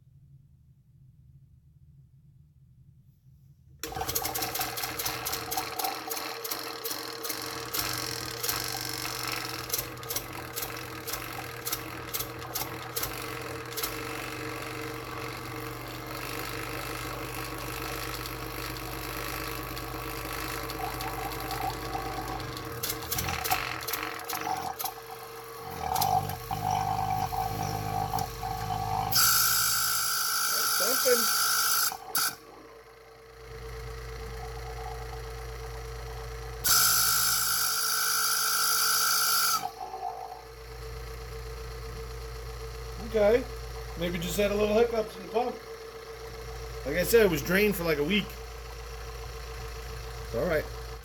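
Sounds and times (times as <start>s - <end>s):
pump clicking rattle: 3.8s - 14.6s, 16.2s - 29.4s
vacuum pump hum: 3.8s - 51.0s.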